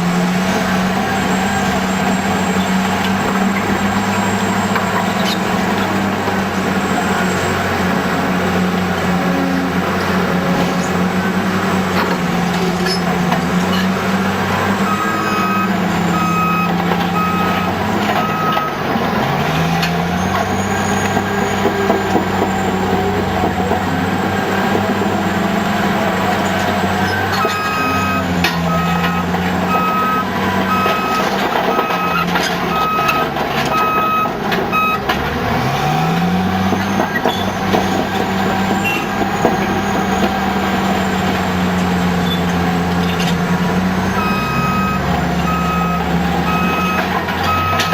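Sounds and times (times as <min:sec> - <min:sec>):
dozer diesel engine under load: 0:00.0 - 0:47.9
reversing alarm beeping: 0:14.8 - 0:23.8, 0:26.7 - 0:38.0, 0:44.1 - 0:47.9.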